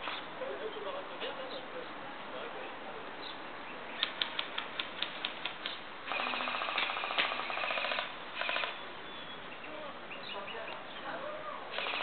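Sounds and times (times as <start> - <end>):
airsoft gun firing full auto: 6.1 - 8.8, 11.7 - 12.0.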